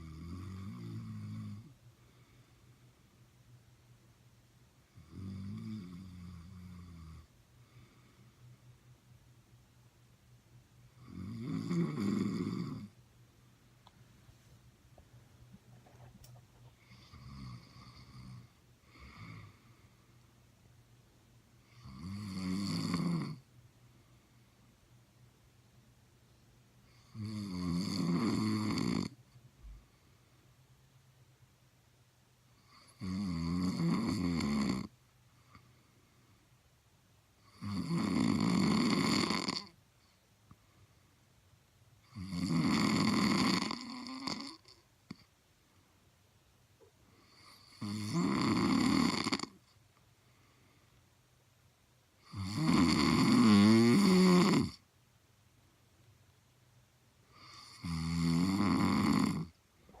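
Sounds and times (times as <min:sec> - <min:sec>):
person snoring: 0:00.0 - 0:01.7, 0:11.0 - 0:12.9, 0:21.7 - 0:23.4, 0:27.0 - 0:29.2, 0:32.6 - 0:34.9, 0:37.4 - 0:39.8, 0:42.0 - 0:44.8, 0:47.2 - 0:49.6, 0:52.2 - 0:54.8, 0:57.3 - 1:00.0
quiet breathing: 0:00.0 - 0:04.1, 0:04.7 - 0:09.4, 0:13.8 - 0:22.0, 0:23.3 - 0:25.3, 0:29.1 - 0:31.2, 0:34.8 - 0:37.6, 0:39.6 - 0:42.2, 0:46.8 - 0:47.9, 0:49.3 - 0:51.3, 0:59.4 - 1:00.0.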